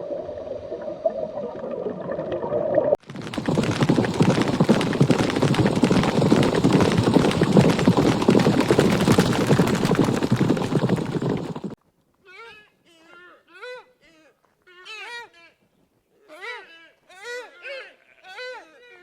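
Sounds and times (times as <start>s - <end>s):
hooves clattering: 3.0s - 11.8s.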